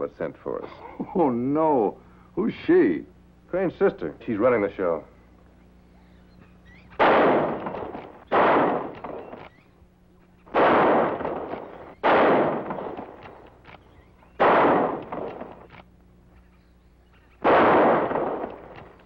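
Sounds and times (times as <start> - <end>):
rifle shots echoing: 6.8 - 16.4, 17.2 - 19.0.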